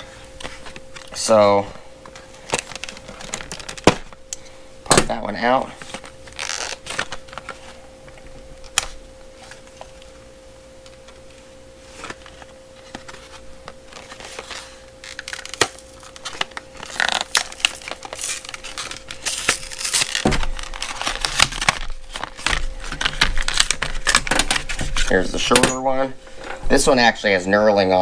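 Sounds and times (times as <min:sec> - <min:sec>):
faint steady hum: 0:00.0 - 0:28.0
plastic packaging clicking: 0:02.0 - 0:05.2, 0:13.9 - 0:25.1.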